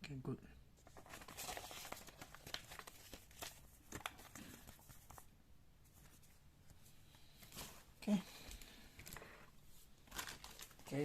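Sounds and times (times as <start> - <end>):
packaging and paper rustling: 0.8 - 5.3, 8.4 - 11.0.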